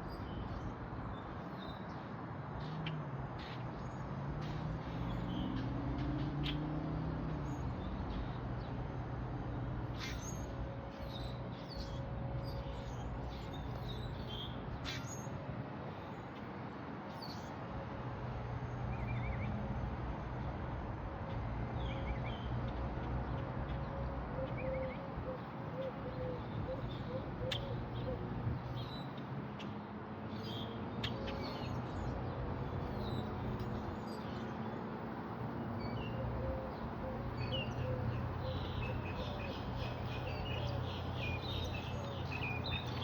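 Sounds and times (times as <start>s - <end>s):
small birds chirping: 35.7s - 43.0s.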